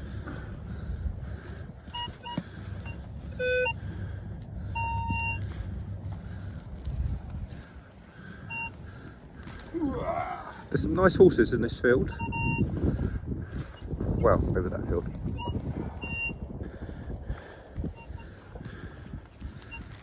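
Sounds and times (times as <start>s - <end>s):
metal detector beeping: 1.9s - 3.8s, 4.7s - 5.5s, 8.5s - 8.8s, 12.1s - 12.7s, 15.4s - 16.4s, 17.9s - 18.4s, 19.6s - 20.0s.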